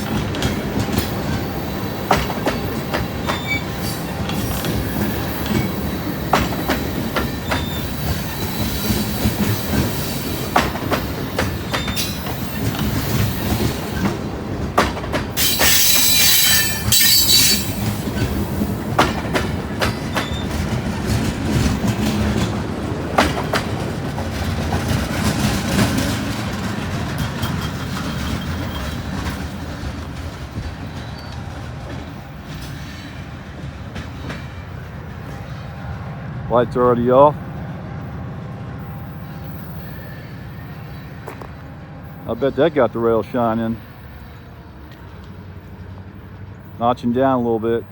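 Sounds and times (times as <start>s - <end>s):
wheels clicking over rail joints: 0.0s - 35.4s
freight train rolling on rails: 0.0s - 47.9s
high wheel squeal: 1.4s - 10.6s, 11.4s - 14.1s, 15.4s - 18.6s, 20.1s - 20.6s, 38.8s - 47.7s.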